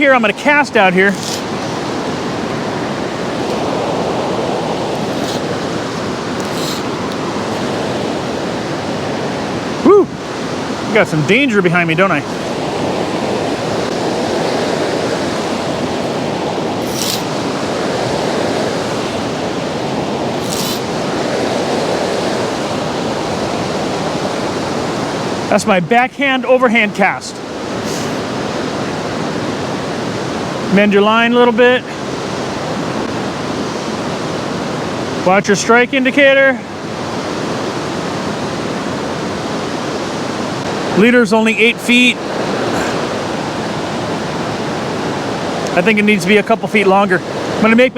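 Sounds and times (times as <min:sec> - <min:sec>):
river rushing over rapids: 0:00.0 - 0:25.5.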